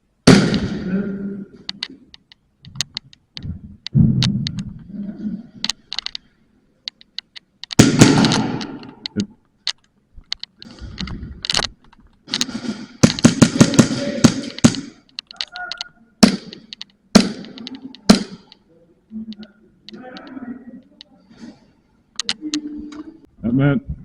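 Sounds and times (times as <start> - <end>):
airsoft guns firing: 0.3 - 0.9, 7.8 - 9.0, 12.4 - 15.0, 16.2 - 18.5.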